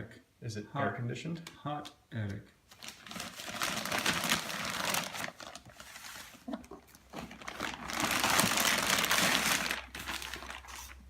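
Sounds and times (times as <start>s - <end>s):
cardboard and foam rustling: 2.7s - 11.0s.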